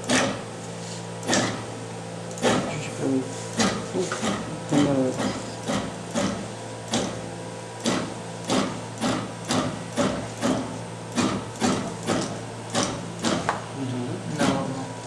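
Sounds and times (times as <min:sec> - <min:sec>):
steady low machine hum: 0:00.0 - 0:15.0.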